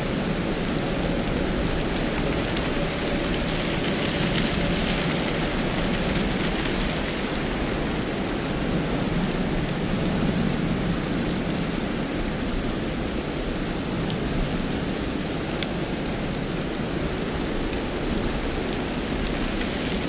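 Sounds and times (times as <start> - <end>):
wind blowing with sleet: 0.0 - 20.0.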